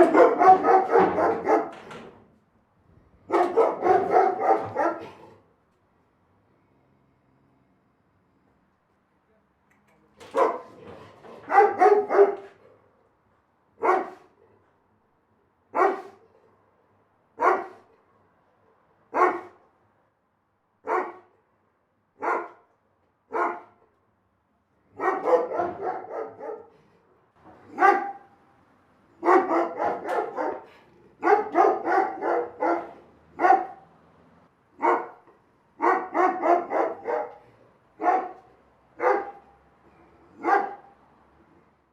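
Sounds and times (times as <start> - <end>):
big dog barking: 0.0 - 2.0, 3.2 - 5.4, 10.2 - 12.9, 13.8 - 14.5, 15.7 - 16.5, 17.4 - 18.0, 19.1 - 19.6, 20.8 - 21.4, 22.2 - 22.7, 23.3 - 23.9, 24.9 - 28.4, 29.1 - 33.9, 34.7 - 41.0.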